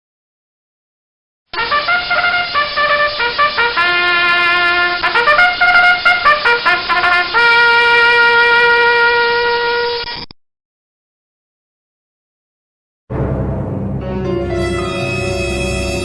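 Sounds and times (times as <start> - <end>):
short brass melody: 1.6 - 10.0, 13.1 - 16.0.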